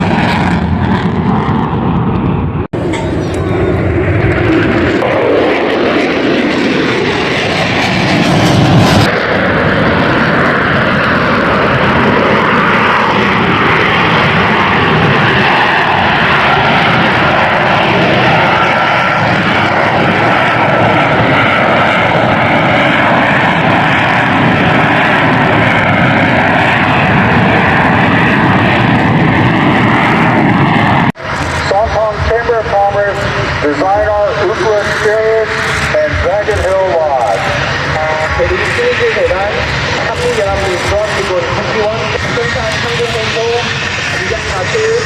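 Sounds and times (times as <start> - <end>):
airplane engine running: 0.0 - 45.0.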